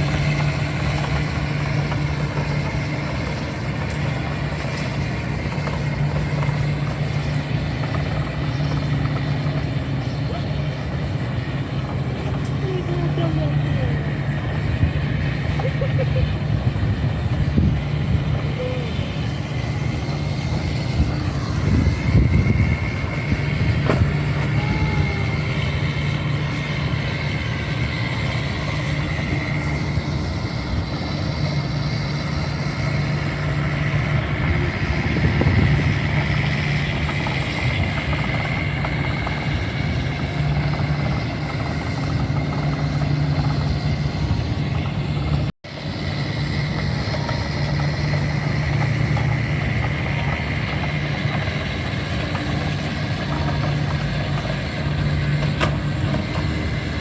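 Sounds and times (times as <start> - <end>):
robotic vacuum motor whine: 11.8 - 57.0.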